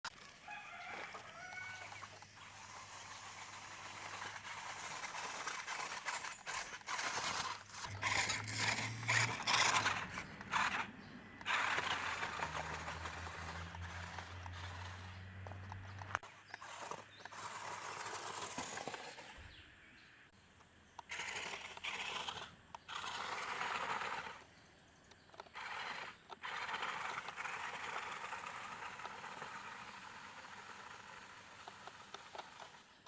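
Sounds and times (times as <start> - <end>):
toy truck motor hum: 0.0 - 19.5, 20.9 - 33.0
tyres scraping over ground: 0.0 - 20.3, 20.9 - 33.0.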